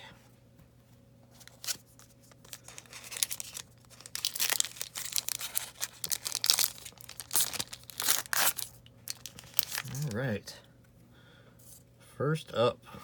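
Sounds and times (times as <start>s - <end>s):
wrapper tearing and crinkling: 1.4s - 10.2s.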